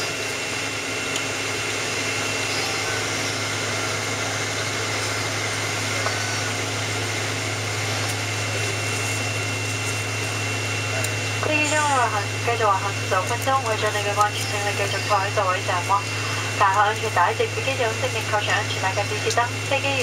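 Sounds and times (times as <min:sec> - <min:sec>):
faint high whine: 0:00.0 - 0:20.0
low cabin hum: 0:00.0 - 0:20.0.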